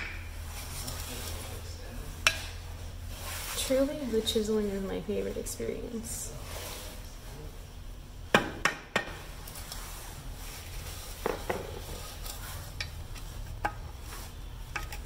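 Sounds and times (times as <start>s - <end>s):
hammer striking chisel on metal: 8.3s - 9.2s.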